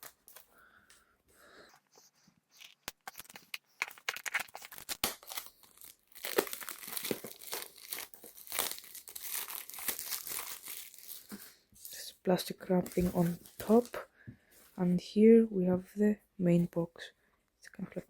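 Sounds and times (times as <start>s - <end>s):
plastic wrap crinkling: 2.5s - 12.0s, 12.8s - 14.1s
pin piercing plastic wrap: 2.6s - 11.4s.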